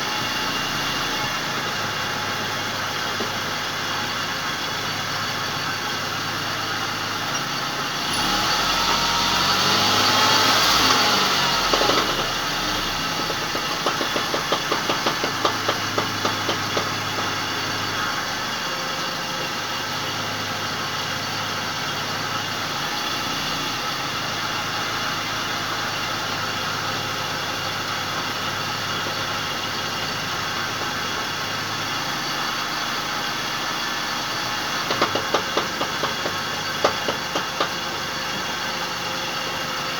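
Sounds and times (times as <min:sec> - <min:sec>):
car engine revving: 0:00.0 - 0:39.9
rapid ratchet-like knocking: 0:11.7 - 0:17.6, 0:34.8 - 0:37.8.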